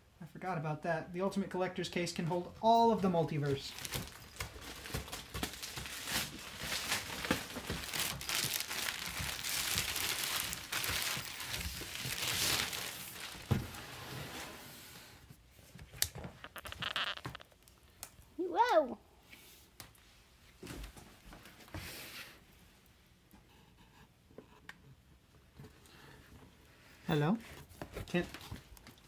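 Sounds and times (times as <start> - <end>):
packaging crinkling and tearing: 3.7 - 13.7, 16.0 - 18.2.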